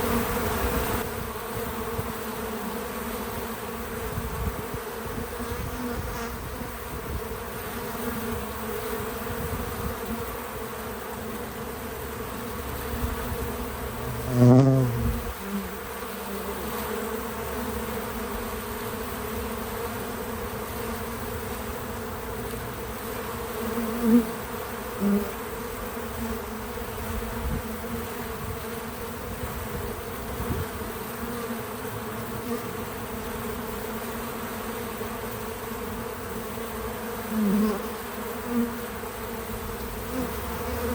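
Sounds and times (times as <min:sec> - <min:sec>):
bee passing close buzzing: 0:00.0 - 0:40.9
bees buzzing: 0:00.0 - 0:40.9.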